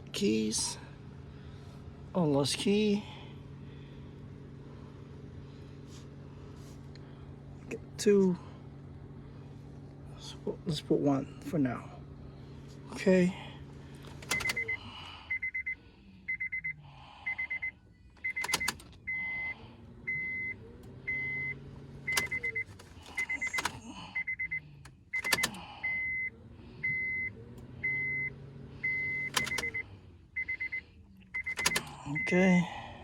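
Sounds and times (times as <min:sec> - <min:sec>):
sharp clicks: 0:25.2 - 0:25.6.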